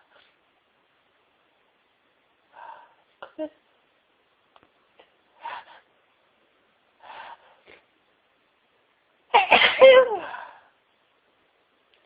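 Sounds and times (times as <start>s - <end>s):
loud sneeze: 9.3s - 10.5s.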